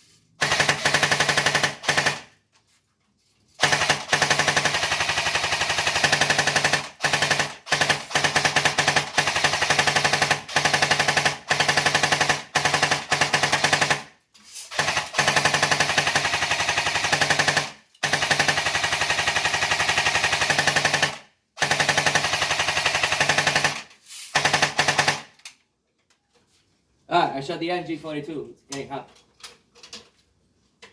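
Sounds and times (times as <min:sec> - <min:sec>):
airsoft gun full-auto bursts: 0:00.4 - 0:02.4, 0:03.6 - 0:25.4.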